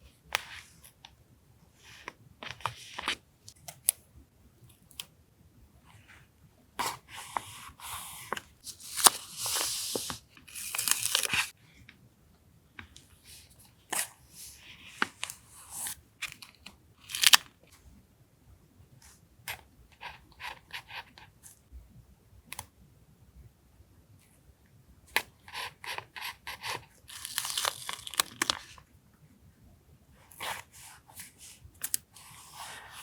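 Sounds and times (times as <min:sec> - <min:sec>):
paper crinkling and tearing: 0:08.6 - 0:11.5, 0:26.5 - 0:28.8.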